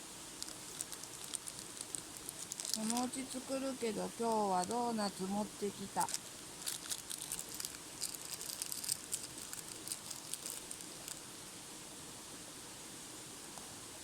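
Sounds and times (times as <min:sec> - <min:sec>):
steady hiss: 0:00.0 - 0:14.0
plastic wrapping crinkling: 0:00.3 - 0:11.3.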